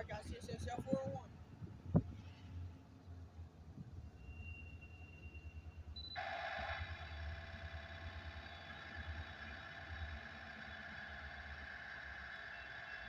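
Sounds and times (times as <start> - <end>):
low rumble of train: 0.0 - 13.0
train wheels squealing on rail: 3.9 - 9.7.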